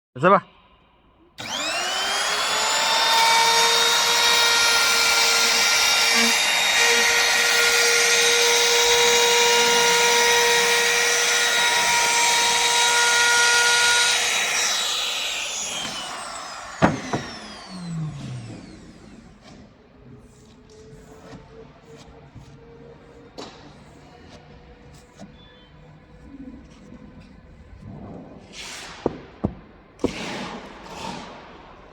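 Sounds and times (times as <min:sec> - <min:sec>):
edge trimmer motor whining: 0:01.4 - 0:19.2.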